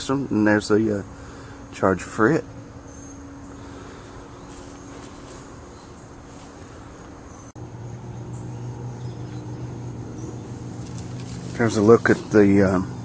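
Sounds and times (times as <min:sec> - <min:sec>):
insects chirring: 0:00.0 - 0:13.0
low hum: 0:00.0 - 0:13.0.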